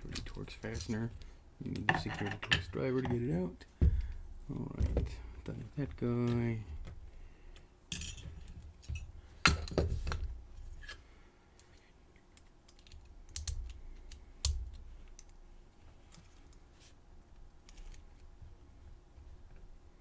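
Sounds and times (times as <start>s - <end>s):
small tools clicking and clinking: 0.0s - 3.3s, 7.9s - 10.2s
metal parts clacking on bench: 1.8s - 3.3s.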